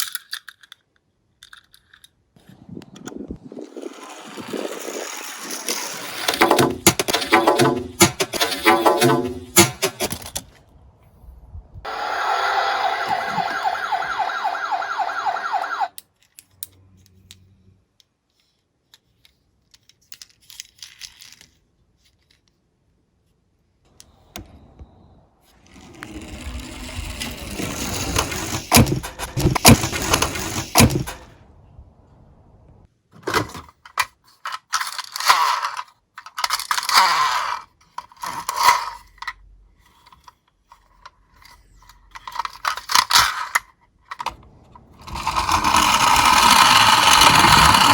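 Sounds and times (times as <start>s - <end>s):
toy cars rolling and clattering: 0.0s - 2.5s, 3.6s - 10.6s, 11.9s - 17.5s, 18.3s - 22.6s, 25.6s - 31.4s, 33.2s - 47.9s
toy siren warbling: 11.9s - 16.0s.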